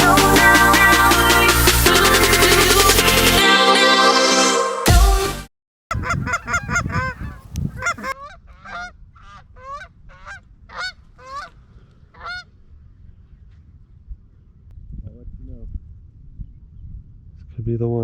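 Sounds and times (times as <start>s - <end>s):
geese honking: 5.9s - 12.5s.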